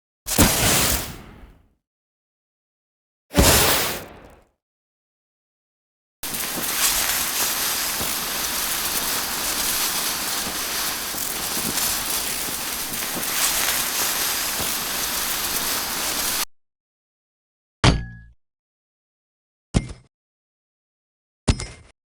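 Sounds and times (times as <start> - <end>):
hiss of escaping gas: 0.3 - 1.4, 3.4 - 4.4, 6.2 - 16.4
short sharp sound: 3.3 - 4.4.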